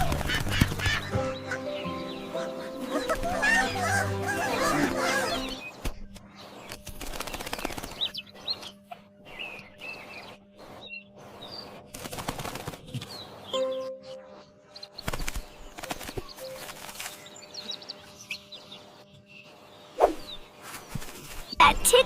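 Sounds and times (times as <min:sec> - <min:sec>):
wings flapping: 0:00.0 - 0:01.5, 0:06.7 - 0:08.2, 0:11.8 - 0:13.3, 0:15.0 - 0:17.3, 0:20.0 - 0:21.6
chickens chirping: 0:00.0 - 0:05.9
faint music: 0:00.0 - 0:22.0.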